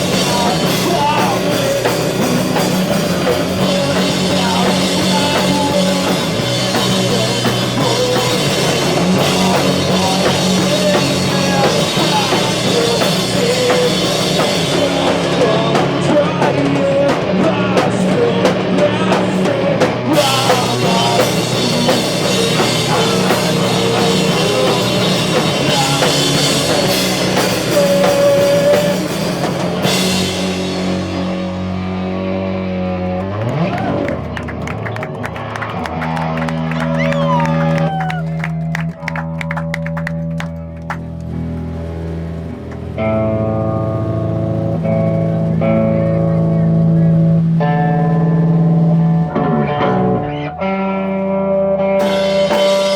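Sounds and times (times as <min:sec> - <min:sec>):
drum kit and cymbals: 0:00.0 - 0:32.2, 0:52.0 - 0:52.9
electric guitars: 0:00.0 - 0:52.9.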